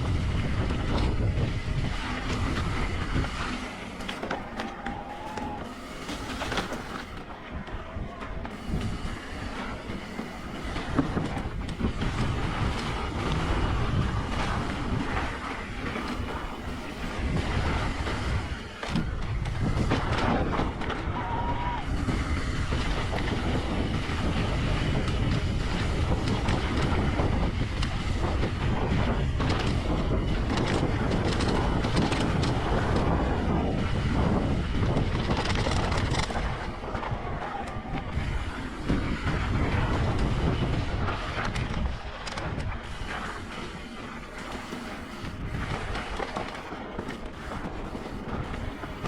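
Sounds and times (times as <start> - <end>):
bike knocking and rattling: 0.0 - 49.0
tyres rumbling over dirt: 0.0 - 49.0.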